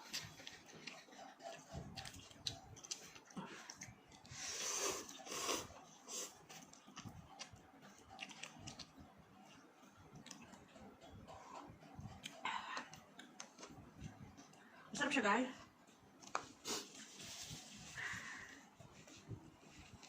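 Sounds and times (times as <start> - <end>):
chewing with wet clicks: 0.1 - 4.4, 5.1 - 14.7.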